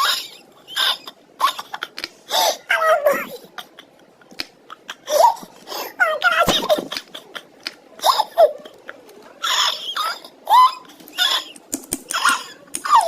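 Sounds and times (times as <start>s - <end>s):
young boy giggling: 0.0s - 13.0s.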